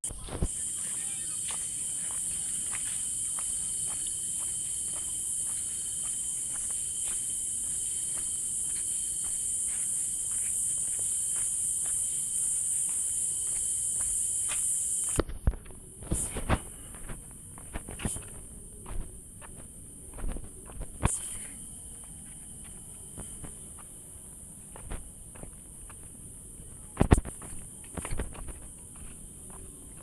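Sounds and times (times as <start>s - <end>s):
forest insects chorus: 0.0s - 15.2s, 17.8s - 26.1s.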